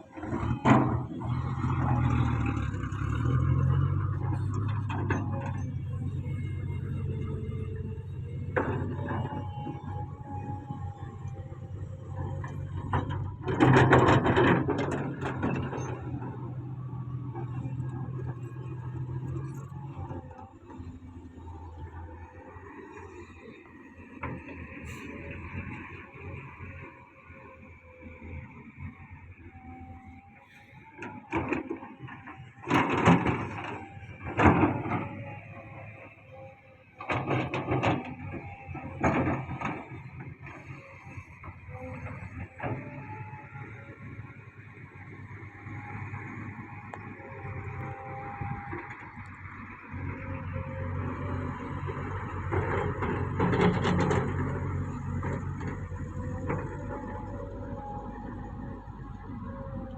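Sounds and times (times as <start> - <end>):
bulldozer diesel engine running: 0.0 - 59.9
heavy machinery rumbling: 0.0 - 59.9
machinery clanking and scraping: 0.0 - 59.9
metal clanks and knocks: 12.2 - 16.3.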